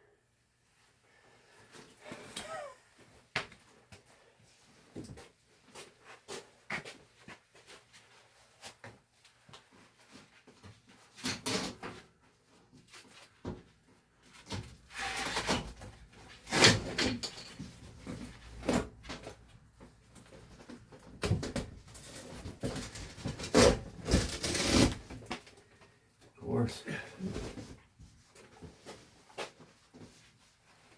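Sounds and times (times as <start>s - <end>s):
knocks and scrapes on ductwork: 14.4s - 19.3s, 21.2s - 25.5s.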